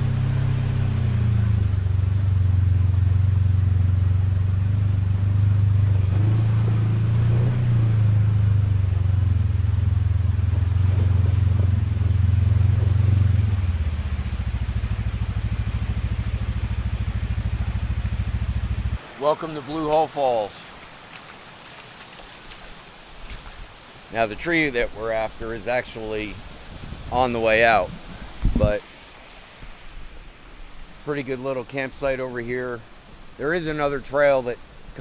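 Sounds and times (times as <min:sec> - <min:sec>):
off-road vehicle engine running: 0:00.0 - 0:20.5, 0:24.2 - 0:28.8.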